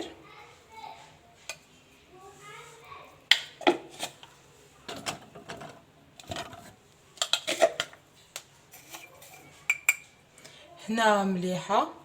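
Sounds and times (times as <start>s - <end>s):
kitchen utensils clicking and tapping: 4.9s - 10.2s.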